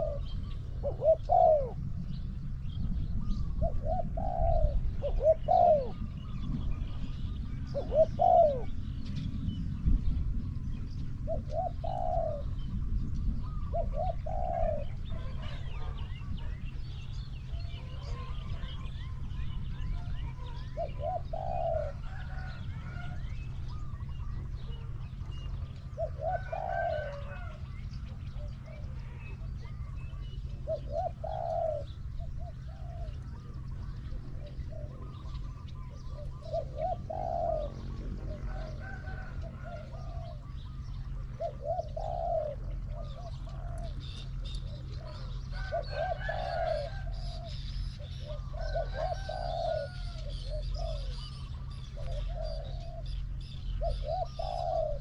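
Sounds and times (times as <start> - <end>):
dove cooing: 0.0 - 55.0
small birds chirping: 0.0 - 55.0.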